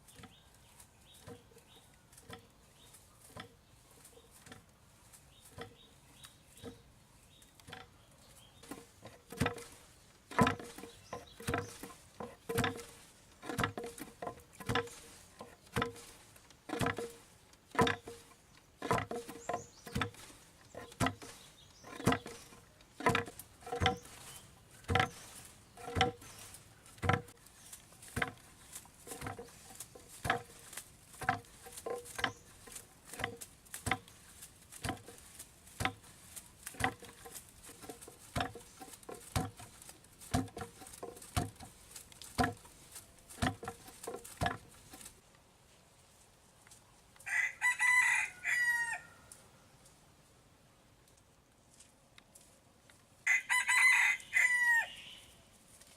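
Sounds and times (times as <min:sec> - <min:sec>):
rooster crowing: 0:47.2 - 0:49.3, 0:53.2 - 0:55.0.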